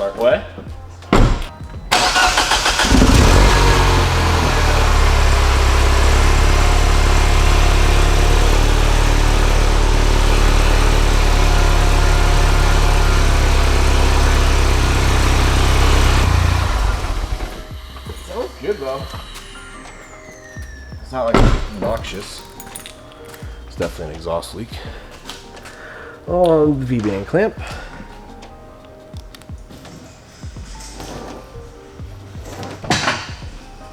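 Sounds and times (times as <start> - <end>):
car engine cold start and idle: 1.3 - 17.8.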